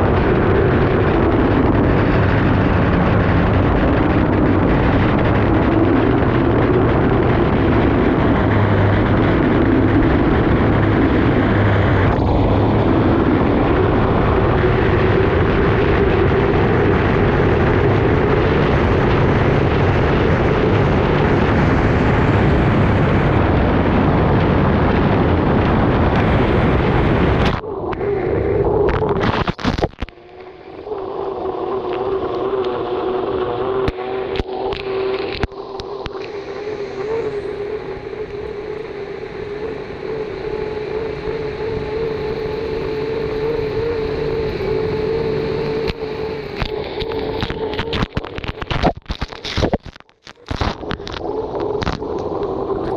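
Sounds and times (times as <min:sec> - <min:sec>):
hydroplane engine water and wind rush: 0:00.0 - 0:52.9.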